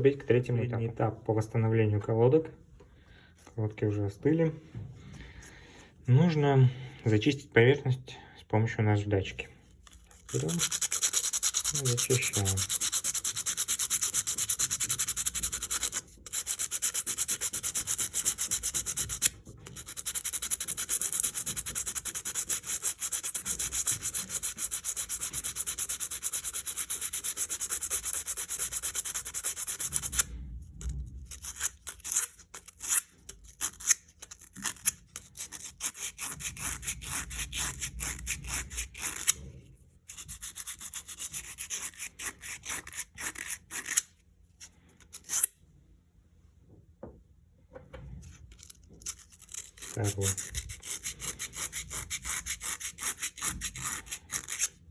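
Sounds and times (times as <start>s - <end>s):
sandpaper rasping on brake pad: 10.1s - 30.3s, 49.4s - 54.7s.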